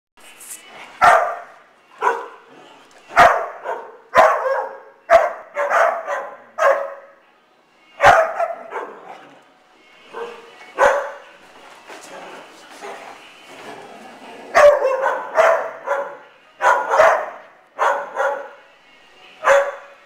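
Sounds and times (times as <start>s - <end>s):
dog barking sharply: 3.2s - 7.0s, 8.0s - 9.0s, 14.6s - 18.5s.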